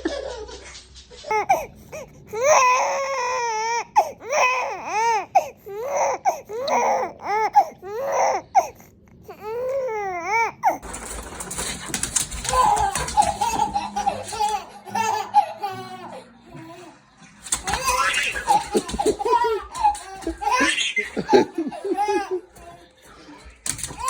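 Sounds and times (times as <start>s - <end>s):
baby crying: 1.3s - 22.9s, 23.6s - 24.0s.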